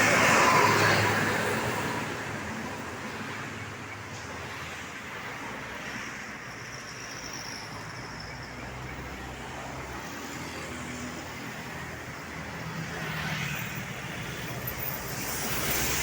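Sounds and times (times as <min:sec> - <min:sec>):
road traffic passing: 0:00.0 - 0:16.0.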